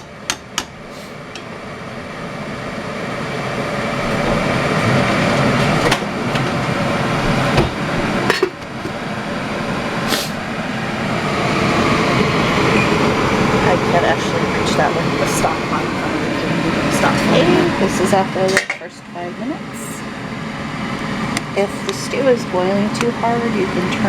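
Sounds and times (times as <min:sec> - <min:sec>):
steady hiss: 0:10.0 - 0:10.5.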